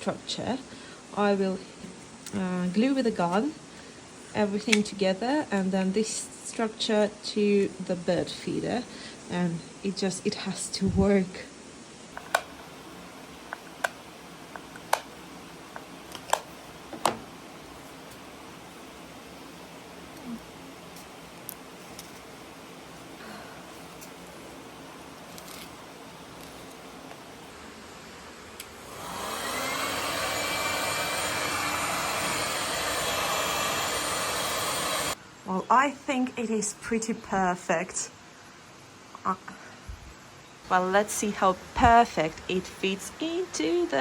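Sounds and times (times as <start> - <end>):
heat gun fan whining: 12.2 - 35.2.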